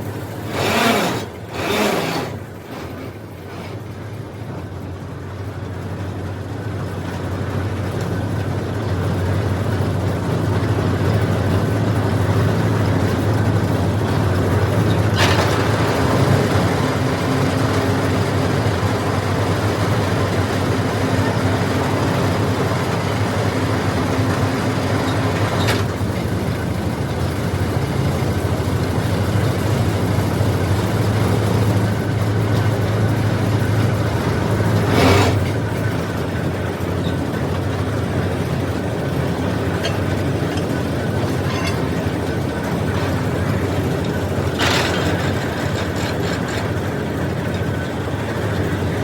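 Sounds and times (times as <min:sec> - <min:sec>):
machine noise: 0:00.0 - 0:04.6, 0:32.8 - 0:49.0
drilling rig engine hum: 0:00.0 - 0:49.0.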